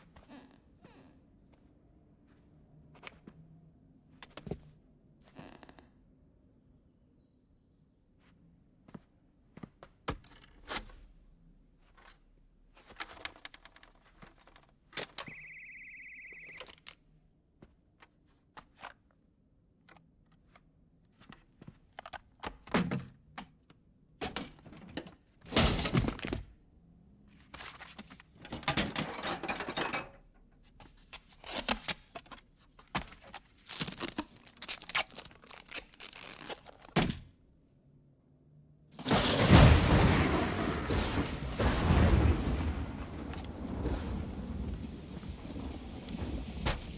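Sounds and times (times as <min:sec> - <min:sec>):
steady multi-pitch tone: 0:15.3 - 0:16.6.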